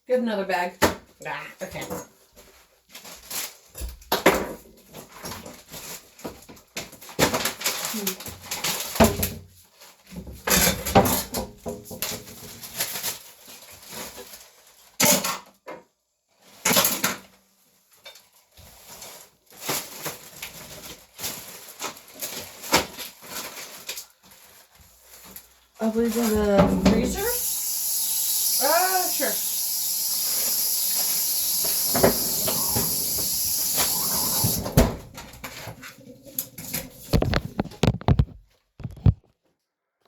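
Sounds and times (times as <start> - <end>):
bags rustling: 18.3 - 27.4.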